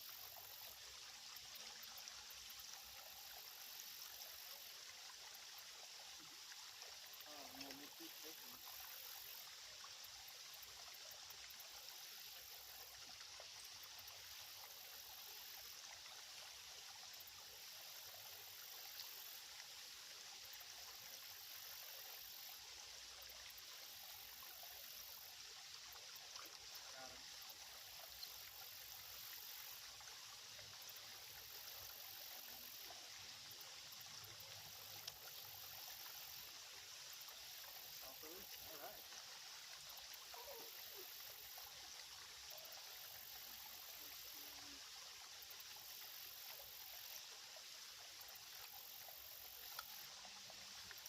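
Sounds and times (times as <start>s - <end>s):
trickle of running water: 0.0s - 51.0s
faint ticks: 17.0s - 19.5s, 25.9s - 30.0s, 30.8s - 36.6s, 48.2s - 51.0s.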